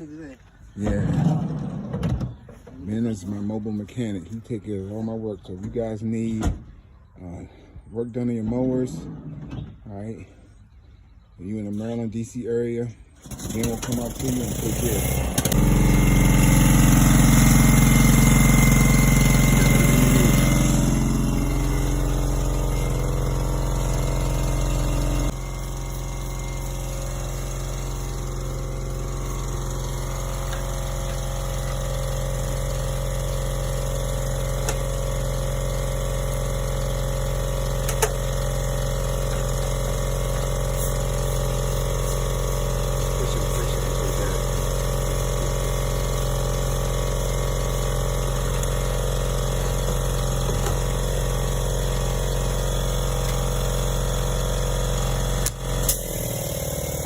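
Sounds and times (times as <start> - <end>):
lawn mower engine running: 13.2 - 57.0.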